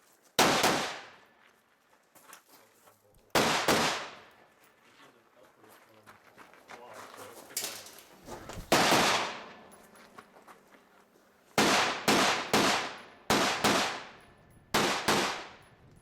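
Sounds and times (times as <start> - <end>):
rifle shots with ringing echo: 0.4 - 1.3, 3.3 - 4.4, 8.6 - 9.9, 11.6 - 15.8.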